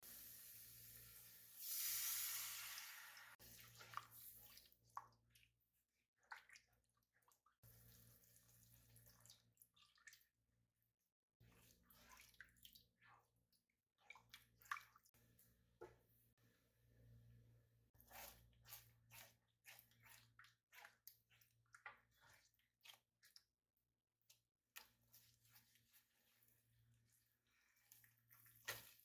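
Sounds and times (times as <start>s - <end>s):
water running: 0.0s - 5.1s.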